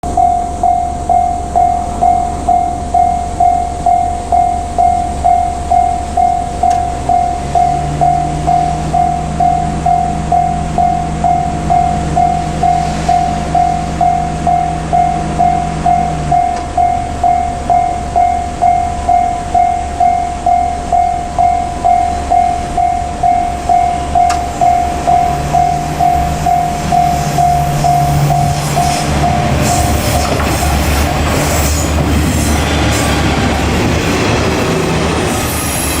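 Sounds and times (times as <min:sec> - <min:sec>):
diesel railcar engine hum: 0:00.0 - 0:36.0
level-crossing alarm bell dinging: 0:00.0 - 0:36.0
train wheel clatter: 0:26.2 - 0:36.0.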